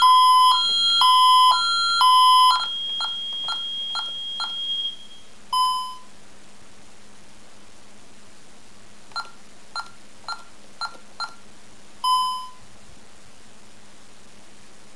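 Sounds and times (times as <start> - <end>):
alarm keypad beeping: 0.0 - 6.0.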